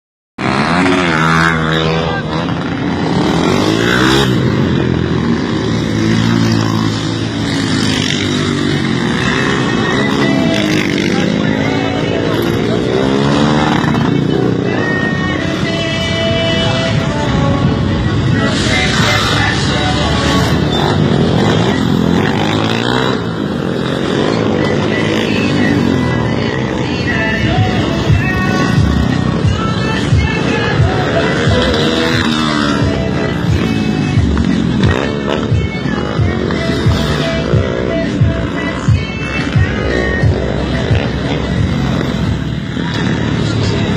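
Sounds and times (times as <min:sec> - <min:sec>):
motorcycle engine revving: 0:00.4 - 0:43.9.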